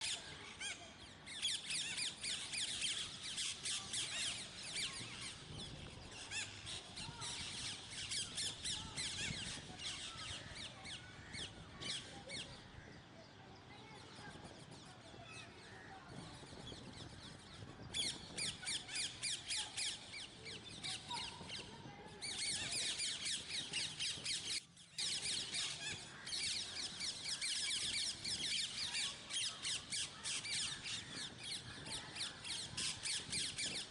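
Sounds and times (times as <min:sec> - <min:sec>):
parrots chattering and squawking: 0:22.3 - 0:33.9.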